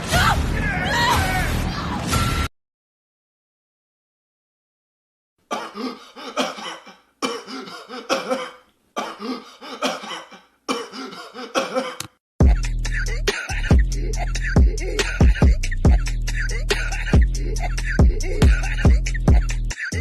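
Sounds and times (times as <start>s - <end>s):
person coughing: 5.5s - 20.0s.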